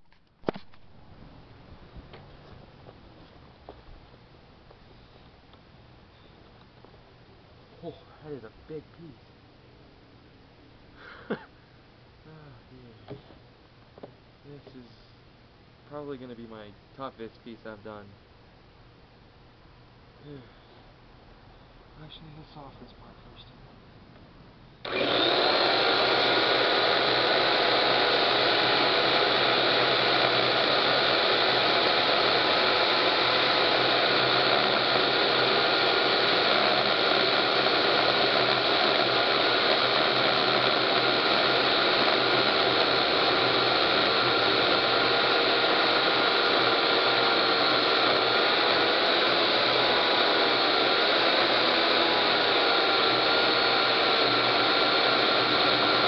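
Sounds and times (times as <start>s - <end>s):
chainsaw sawing firewood: 24.8s - 56.0s.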